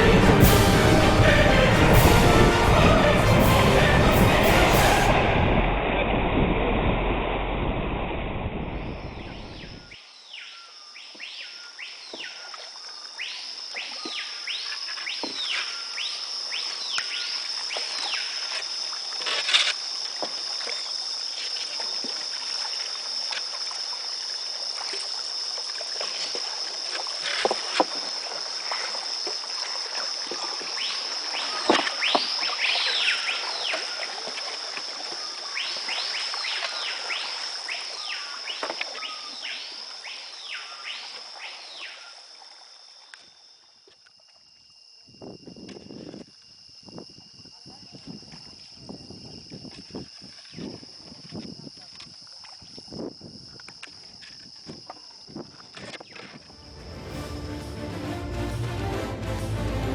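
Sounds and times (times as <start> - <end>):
background music: 0.0 - 5.5, 56.5 - 59.9
insect drone: 0.0 - 58.5.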